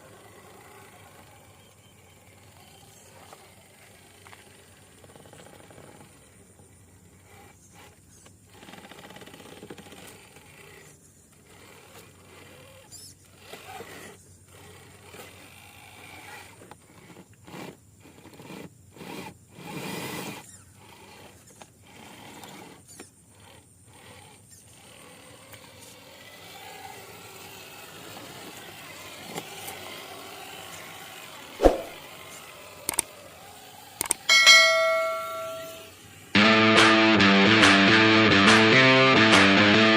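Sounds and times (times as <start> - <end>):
model truck motor whirring: 0.0 - 35.0, 35.6 - 36.4
sharp click: 31.6 - 32.0.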